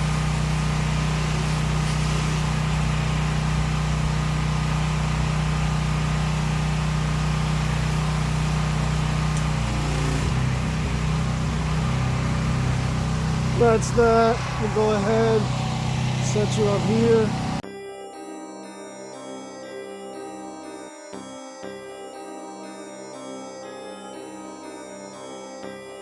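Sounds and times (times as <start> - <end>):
pressure washer engine running: 0.0 - 17.6.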